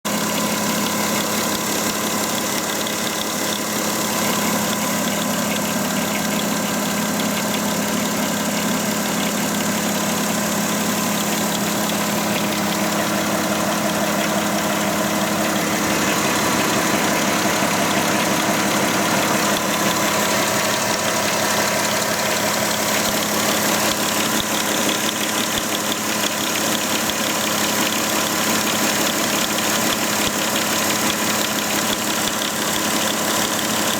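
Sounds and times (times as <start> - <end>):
car engine idling: 0.1 - 33.9
strange engine noise: 0.1 - 33.9.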